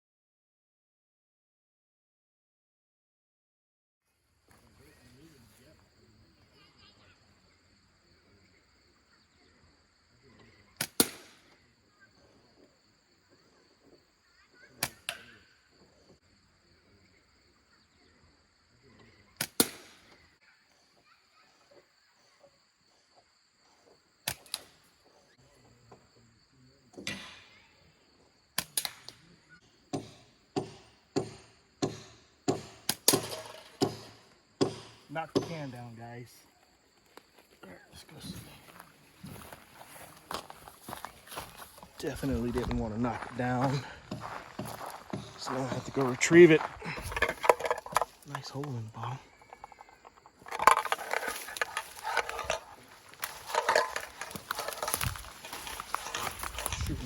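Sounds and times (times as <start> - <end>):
slingshot release snapping: 24.3 - 24.7, 28.6 - 29.2.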